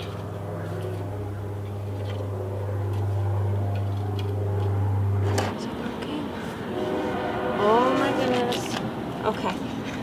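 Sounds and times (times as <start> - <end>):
low mechanical hum: 0.0 - 10.0.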